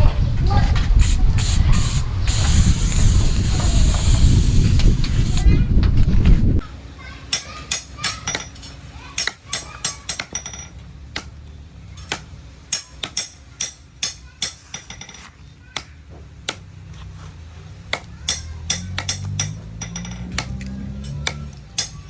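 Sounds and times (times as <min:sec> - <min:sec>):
hammer tapping on metal: 0:17.9 - 0:22.0.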